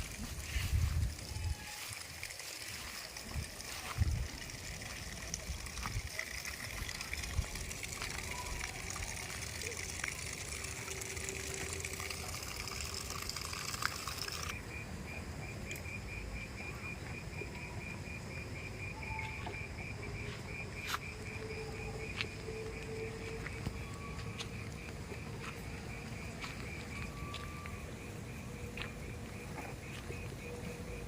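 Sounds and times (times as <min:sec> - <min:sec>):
running water: 0:00.0 - 0:14.5
insects chirping: 0:00.0 - 0:31.0.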